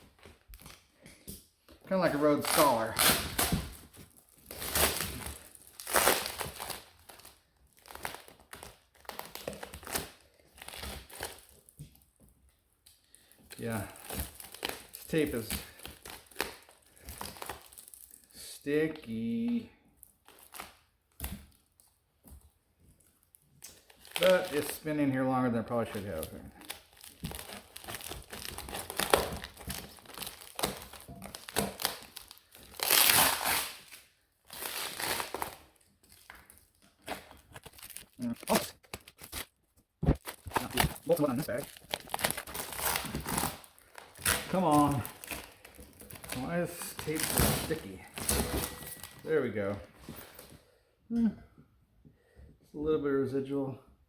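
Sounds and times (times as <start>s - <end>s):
packing tape rustling: 1.7s - 12.1s, 23.0s - 25.0s, 25.8s - 50.6s.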